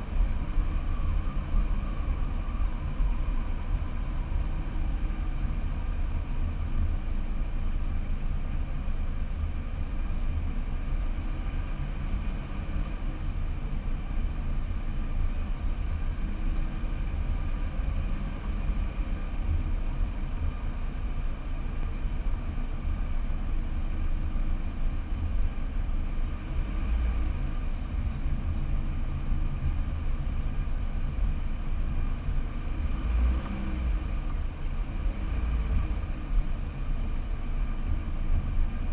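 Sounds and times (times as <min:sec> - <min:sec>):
car engine and road rumble: 0:00.0 - 0:38.9.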